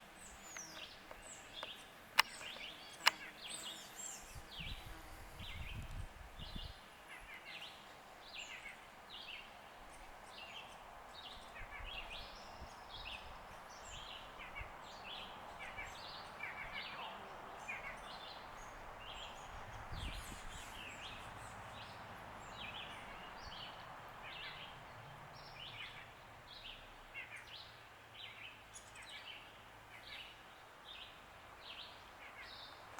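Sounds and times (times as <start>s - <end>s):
sharp clicks: 0.4s - 3.3s.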